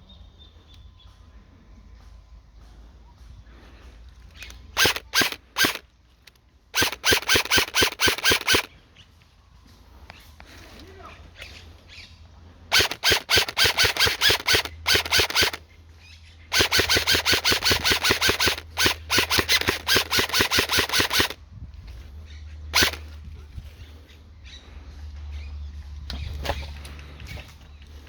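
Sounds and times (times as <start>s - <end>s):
airsoft gun firing on full auto: 4.8s - 5.8s, 6.7s - 8.7s, 12.7s - 15.6s, 16.5s - 21.4s, 22.7s - 23.0s.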